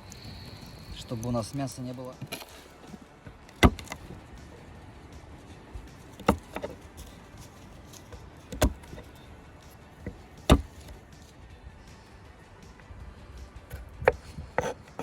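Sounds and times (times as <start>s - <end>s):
sharp knocks: 3.6s - 4.1s, 10.5s - 10.9s.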